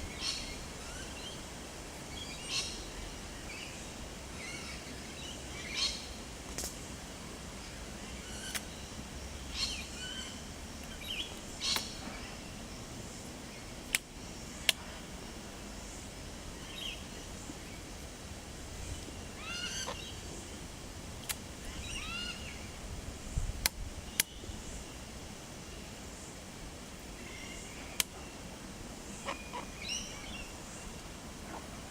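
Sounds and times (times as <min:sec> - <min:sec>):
outdoor background noise: 0:00.0 - 0:31.9
birds chirping: 0:27.2 - 0:31.9.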